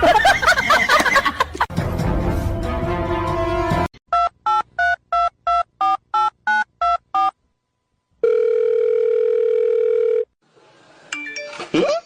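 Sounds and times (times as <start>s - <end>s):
steady telephone tone: 8.2s - 10.3s.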